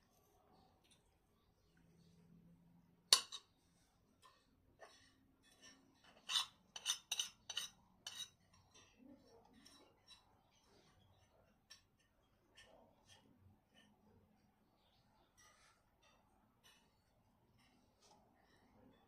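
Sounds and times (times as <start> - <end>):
cutlery clinking against plate: 3.1 - 3.6, 4.2 - 10.3.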